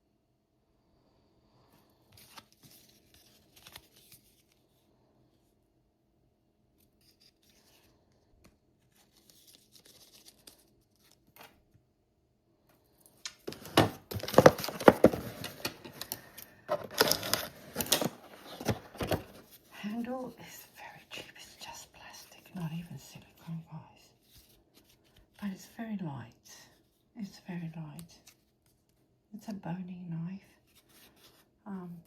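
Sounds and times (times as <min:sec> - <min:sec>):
packaging tearing and crackling: 0:13.4 - 0:19.4
packaging rustling and tapping: 0:13.4 - 0:19.5.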